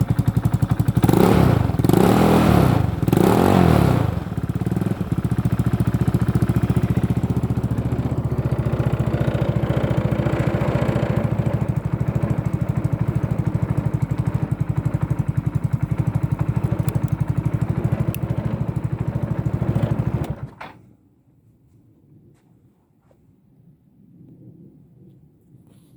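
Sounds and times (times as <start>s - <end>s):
scooter engine idling: 0.0s - 20.7s.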